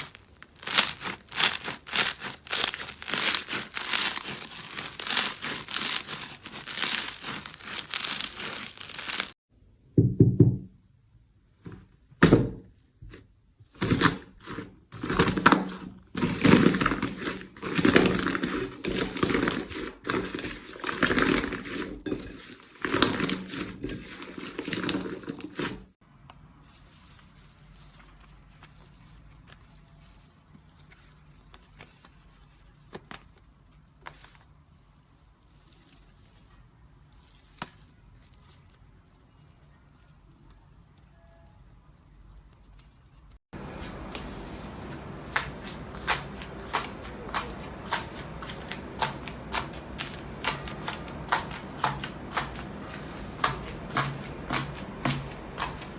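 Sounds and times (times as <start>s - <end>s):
slime squelching by hand: 0.0s - 9.4s, 13.7s - 25.9s, 43.6s - 55.9s.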